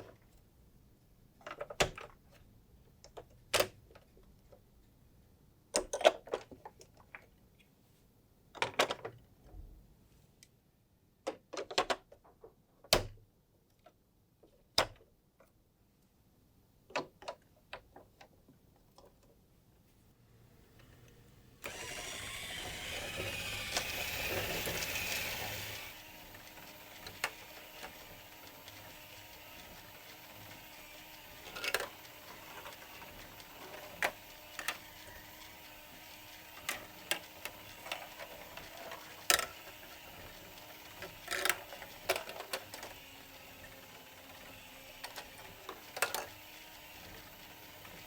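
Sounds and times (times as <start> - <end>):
mechanical elevator running: 20.5 - 42.2
marbles rolling along track: 21.7 - 48.0.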